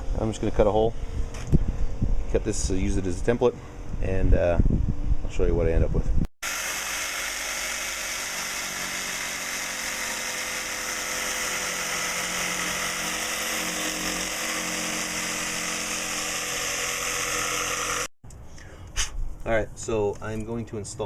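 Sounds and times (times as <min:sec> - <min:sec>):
power tool cutting: 0:06.4 - 0:18.2.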